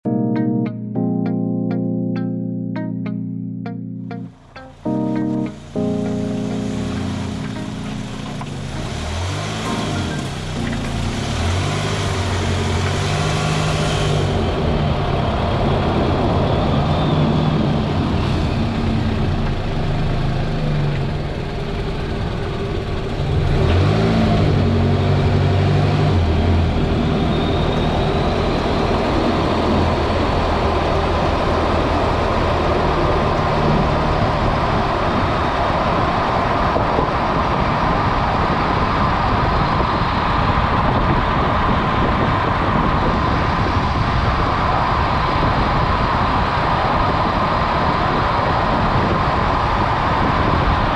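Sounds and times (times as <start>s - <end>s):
even rushing noise: 5.6s - 16.8s
car engine humming: 5.6s - 38.8s.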